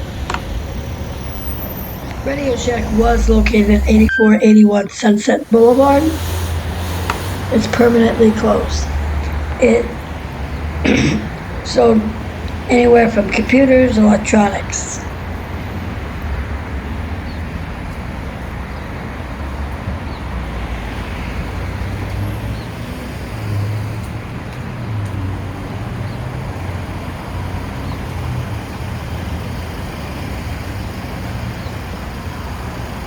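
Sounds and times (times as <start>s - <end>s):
low drone: 0.0s - 15.1s
road traffic rumble: 0.0s - 33.0s.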